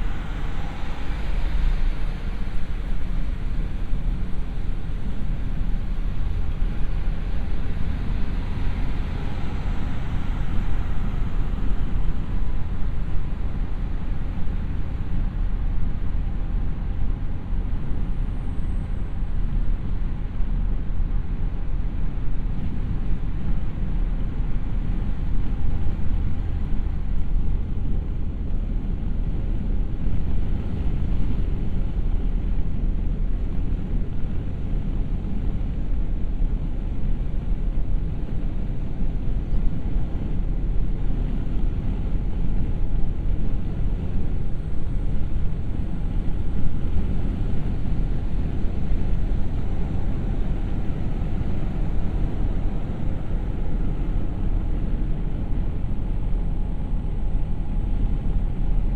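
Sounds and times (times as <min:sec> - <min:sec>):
car engine and road noise: 0:00.0 - 0:58.9.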